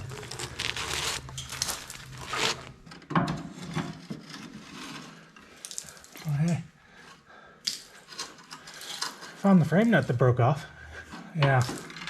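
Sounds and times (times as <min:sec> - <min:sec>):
scraping dirt off steel frame: 0:00.0 - 0:05.5.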